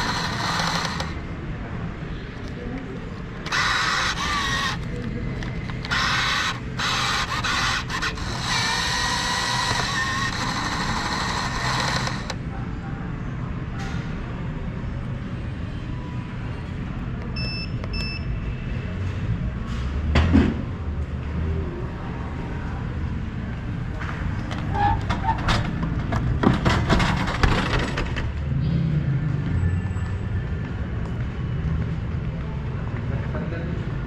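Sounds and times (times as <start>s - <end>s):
clatter: 3.4s - 12.4s, 24.0s - 28.4s.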